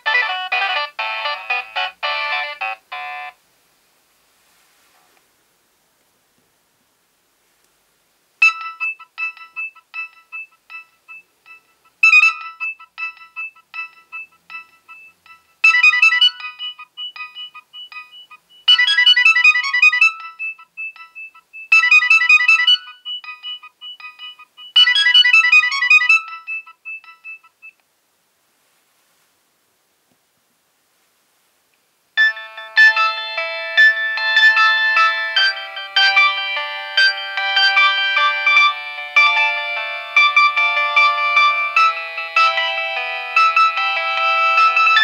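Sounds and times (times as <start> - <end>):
mobile phone ringtone melody: 0.0 - 3.4, 8.4 - 27.5, 32.2 - 45.0.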